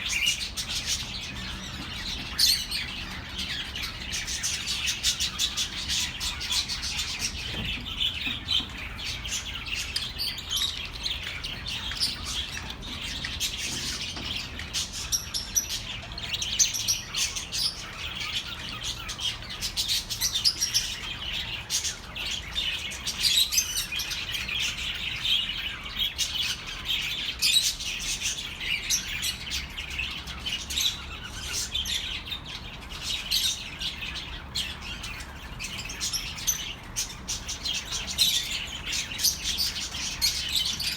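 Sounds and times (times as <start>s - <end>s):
budgerigars chattering and chirping: 0.0s - 40.9s.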